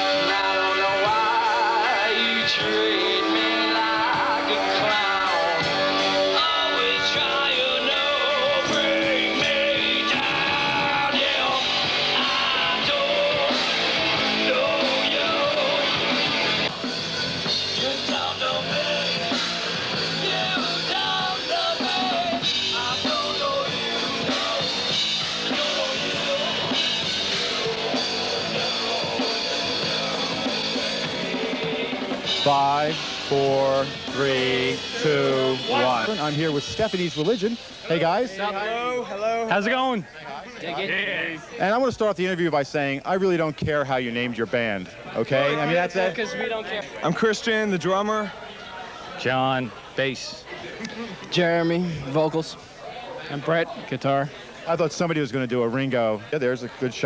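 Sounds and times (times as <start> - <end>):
rock music with singing: 0.0 - 38.5.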